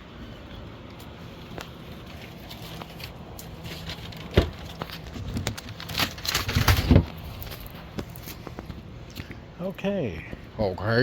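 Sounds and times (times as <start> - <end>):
packing material crinkling: 1.6 - 8.6.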